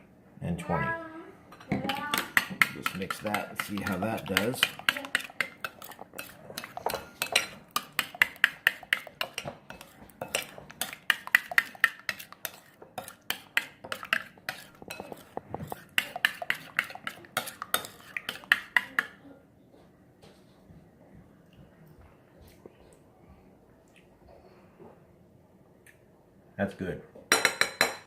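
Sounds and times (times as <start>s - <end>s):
utensil stirring sauce in a bowl: 1.6s - 19.2s
utensil tapping bowl sides: 1.6s - 19.2s.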